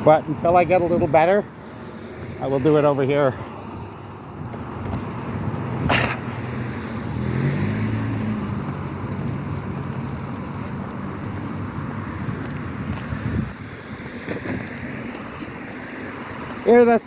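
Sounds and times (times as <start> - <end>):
passing vehicle engine humming: 0.0 - 17.0
wind noise on microphone: 3.7 - 16.7.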